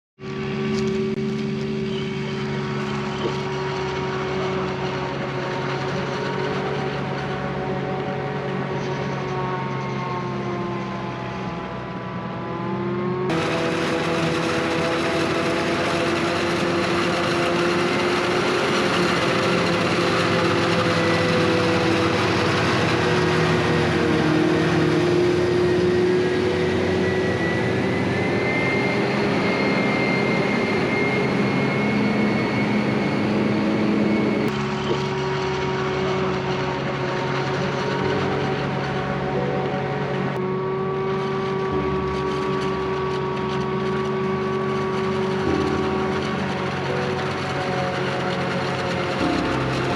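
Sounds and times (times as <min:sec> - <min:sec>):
continuous machine whine: 0:00.2 - 0:49.9
diesel farm machinery running: 0:00.2 - 0:49.9.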